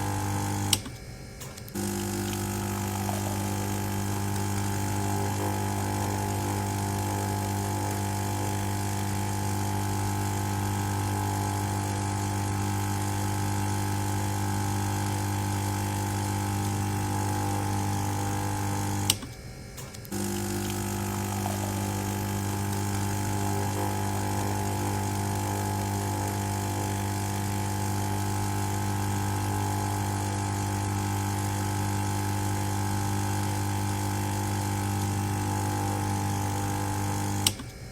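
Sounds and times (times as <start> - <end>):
espresso machine pump humming: 0.0 - 37.9
sharp click: 0.7 - 2.4, 19.1 - 20.2.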